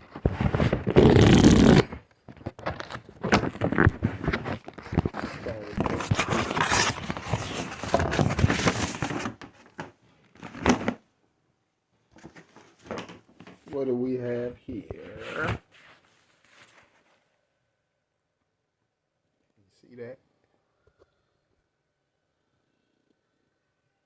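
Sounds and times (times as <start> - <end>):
paper and cardboard rustling: 0.0 - 11.0, 12.2 - 13.9, 15.0 - 17.3
package ripping open: 0.3 - 9.4.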